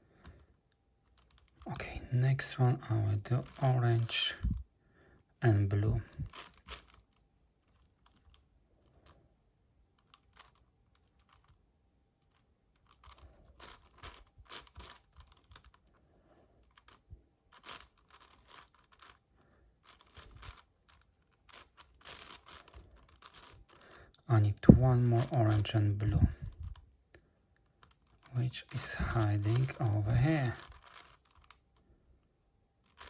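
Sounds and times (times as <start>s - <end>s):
puzzle cube layers clicking: 3.4s - 4.1s, 12.8s - 15.9s, 16.7s - 19.2s, 19.8s - 23.9s, 25.1s - 25.7s, 27.8s - 31.6s.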